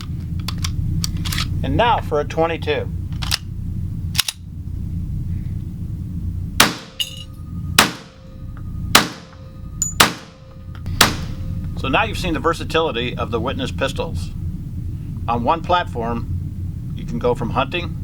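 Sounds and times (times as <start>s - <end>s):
pistol shots: 6.6s - 7.0s, 7.8s - 8.2s, 8.9s - 11.4s.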